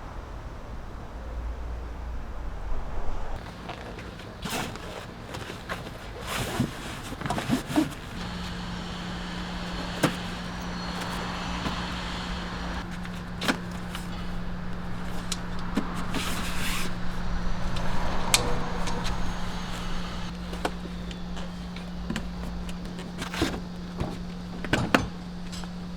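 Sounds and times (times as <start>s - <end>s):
low rumble: 0.0s - 3.4s
motor humming: 5.9s - 25.9s.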